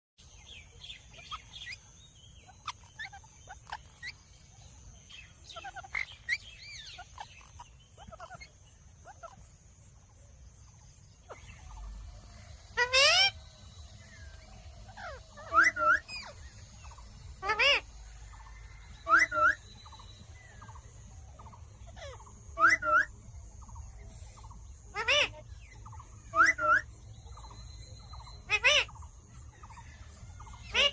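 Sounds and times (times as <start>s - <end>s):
parrot chirping and whistling: 5.6s - 8.5s, 12.8s - 13.4s, 14.2s - 16.4s, 19.0s - 20.0s, 22.0s - 23.1s, 26.3s - 26.9s.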